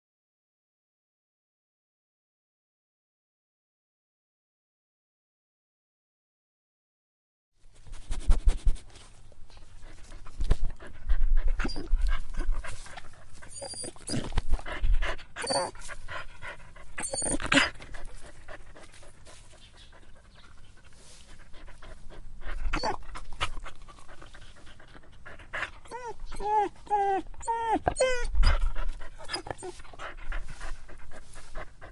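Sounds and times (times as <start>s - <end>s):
dog panting: 8.0s - 31.9s
dog whimpering: 11.6s - 14.7s, 15.3s - 18.1s, 22.6s - 23.0s, 25.6s - 30.4s.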